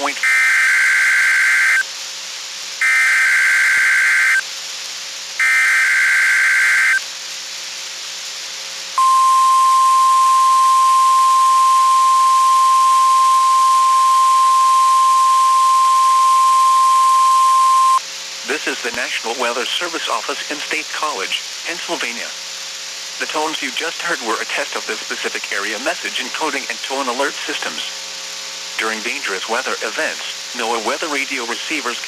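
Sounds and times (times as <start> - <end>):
screeching digital data bursts: 0.0 - 1.9, 2.8 - 4.4, 5.4 - 7.0, 9.0 - 18.0
radio static hiss: 0.0 - 32.0
steady alarm tone: 2.8 - 4.4, 5.4 - 7.0, 9.0 - 18.0.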